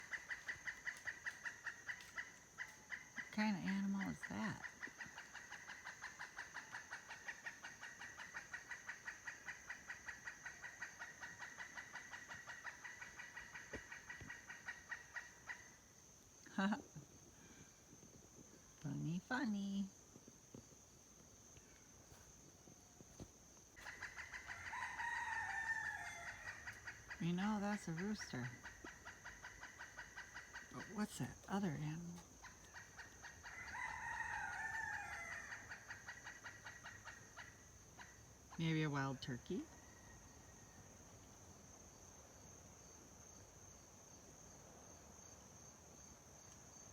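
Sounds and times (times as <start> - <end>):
crickets trilling: 0.0 - 46.9
insect drone: 0.0 - 46.9
soft cricket chirp: 0.0 - 46.9
rooster crowing: 24.2 - 26.8, 33.4 - 35.8.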